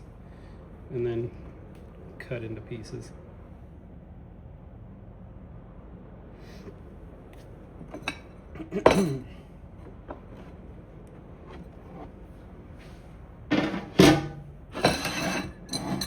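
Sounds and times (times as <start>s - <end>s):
dishes and utensils clinking: 7.9s - 9.3s, 13.5s - 16.0s.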